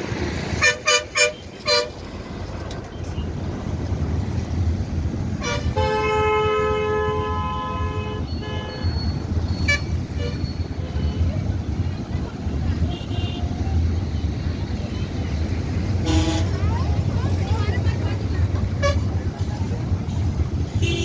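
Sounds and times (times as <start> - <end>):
vehicle horns honking: 0.5 - 2.1, 5.3 - 11.5, 12.7 - 13.7, 15.9 - 17.0, 18.7 - 19.2, 20.0 - 21.0.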